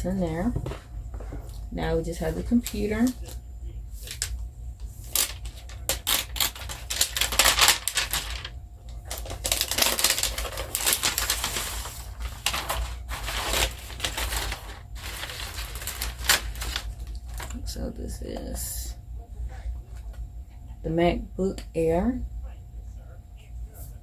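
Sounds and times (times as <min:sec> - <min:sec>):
packaging rustling and crinkling: 0:04.0 - 0:17.7.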